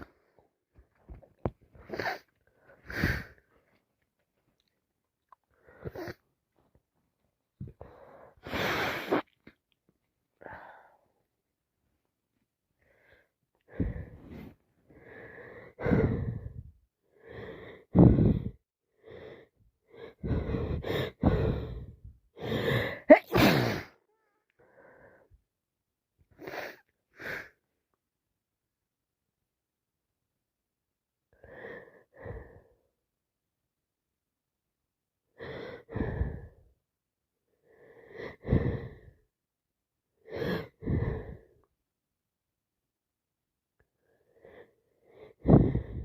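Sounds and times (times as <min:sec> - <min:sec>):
person gasping and wheezing: 0:15.0 - 0:16.7, 0:17.4 - 0:18.6, 0:20.1 - 0:24.0, 0:45.3 - 0:46.0
person sneezing: 0:23.1 - 0:24.0.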